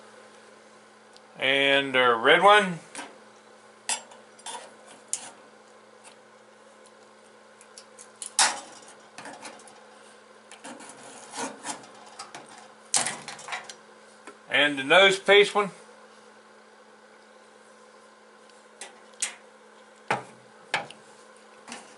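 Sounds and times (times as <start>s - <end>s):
stickers scraped off metal box: 10.6s - 12.0s.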